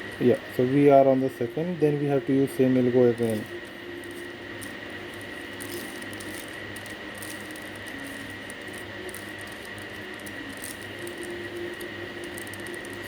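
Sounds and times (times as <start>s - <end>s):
steady background hum: 0.0s - 13.0s
thin whine: 0.0s - 13.0s.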